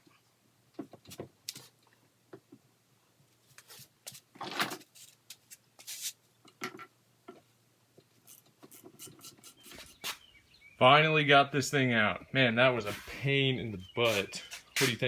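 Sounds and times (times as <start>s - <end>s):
short scrapes: 12.8s - 13.2s, 14.0s - 15.0s.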